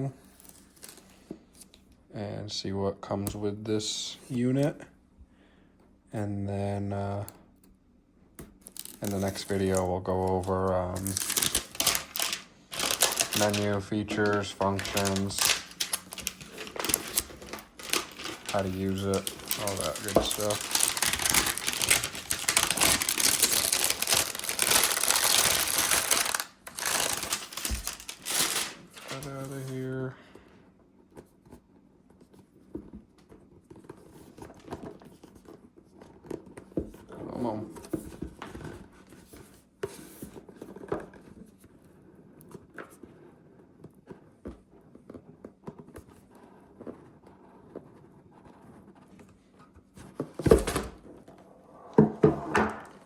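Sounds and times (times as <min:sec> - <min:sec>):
packaging crinkling and rustling: 0:08.6 - 0:30.0.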